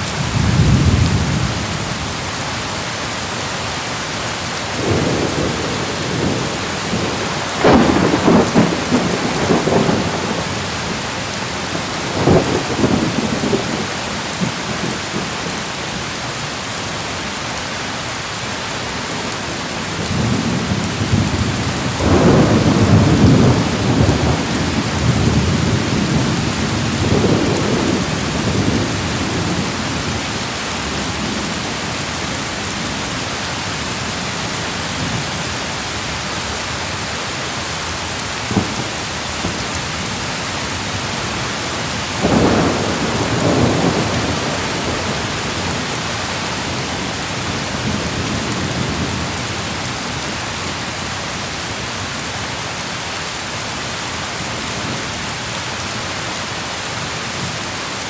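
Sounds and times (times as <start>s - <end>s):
heavy rain hissing: 0.0s - 58.0s
thunder rolling: 4.8s - 10.6s, 20.1s - 30.2s, 42.2s - 49.1s.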